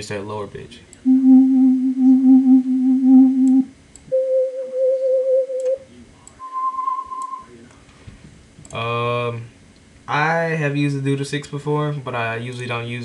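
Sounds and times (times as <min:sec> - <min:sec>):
synth held notes wavering pitch: 0:01.1 - 0:07.5.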